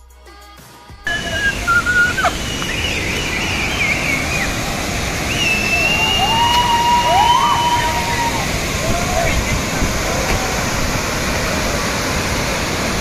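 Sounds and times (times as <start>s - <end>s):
high wavering tones: 1.1s - 6.7s
waterfall rushing: 1.1s - 13.0s.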